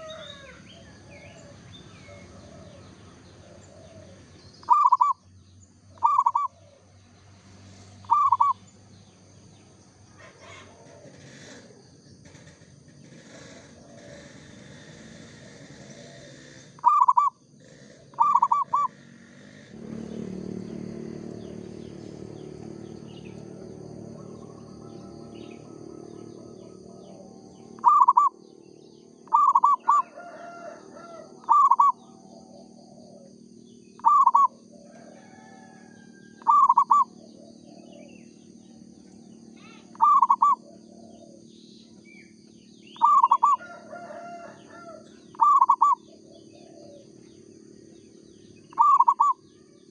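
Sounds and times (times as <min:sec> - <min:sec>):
zebra dove cooing: 0:00.0 - 0:05.2, 0:06.0 - 0:06.8, 0:08.0 - 0:08.6, 0:10.2 - 0:11.9, 0:13.2 - 0:19.6, 0:24.1 - 0:28.4, 0:29.2 - 0:38.4, 0:39.6 - 0:42.2, 0:42.8 - 0:47.4, 0:48.3 - 0:49.9
faint bird calls: 0:00.0 - 0:23.4, 0:24.1 - 0:49.9.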